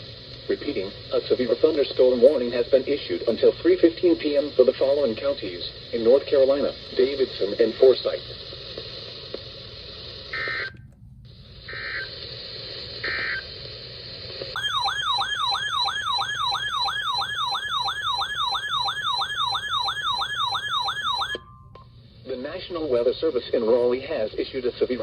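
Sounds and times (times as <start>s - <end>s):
radio hiss: 0.0s - 14.6s, 22.0s - 25.0s
digital data tones: 14.6s - 21.5s
warbling alert tone: 14.6s - 21.6s.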